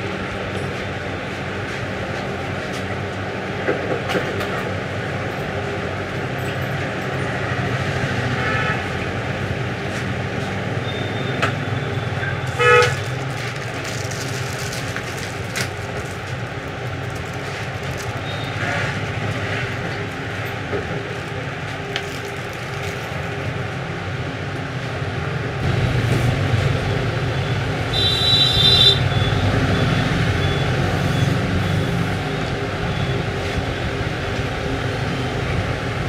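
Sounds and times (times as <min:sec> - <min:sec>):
background traffic noise: 0:00.0 - 0:36.0
vehicle horn toot: 0:12.4 - 0:13.0, 0:27.9 - 0:29.4.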